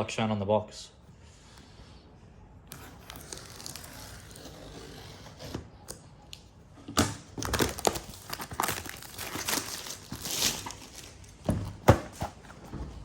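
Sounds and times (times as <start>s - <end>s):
packaging rustling and tearing: 2.7s - 5.4s, 7.0s - 11.4s.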